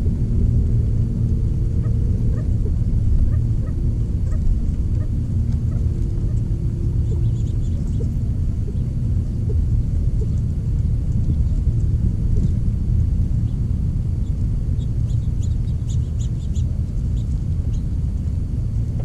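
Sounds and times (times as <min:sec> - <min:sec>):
faint hum: 0:00.0 - 0:19.0
steady low rumble: 0:00.0 - 0:19.0.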